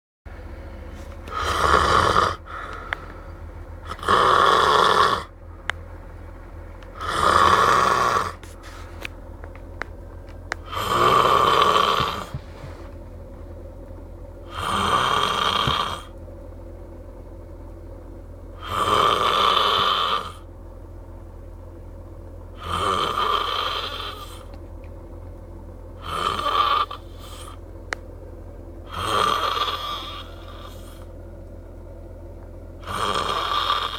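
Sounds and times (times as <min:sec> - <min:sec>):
man snoring: 0:01.3 - 0:03.0, 0:03.8 - 0:05.3, 0:07.0 - 0:08.4, 0:10.6 - 0:12.4, 0:14.4 - 0:16.1, 0:18.6 - 0:20.5, 0:22.6 - 0:24.5, 0:26.0 - 0:27.6, 0:28.9 - 0:31.1, 0:32.8 - 0:33.9.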